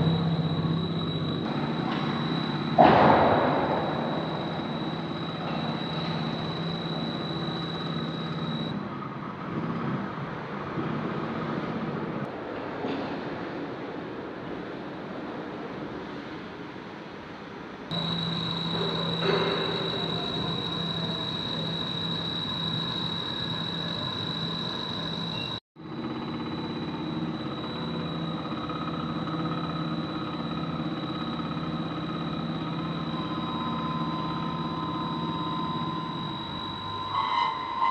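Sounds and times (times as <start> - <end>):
drilling machine whine and hum: 0.0 - 8.8, 17.9 - 37.9.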